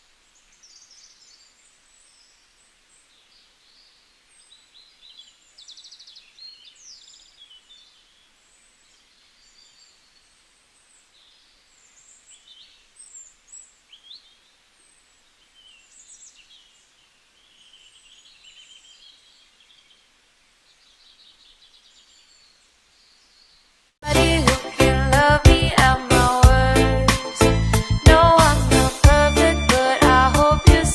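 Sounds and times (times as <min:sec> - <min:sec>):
songbirds chirping and trilling: 0:00.0 - 0:23.9
faint steady hiss: 0:00.0 - 0:30.9.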